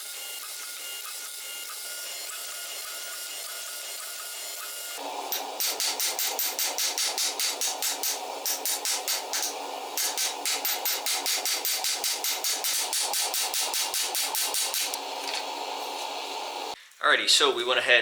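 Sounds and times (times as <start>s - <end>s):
hammer striking hot steel: 5.0s - 15.6s.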